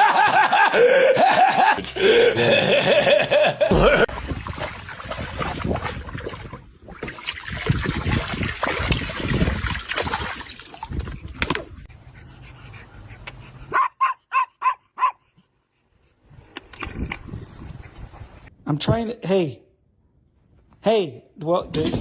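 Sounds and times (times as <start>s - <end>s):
small dog yipping: 13.7s - 15.2s.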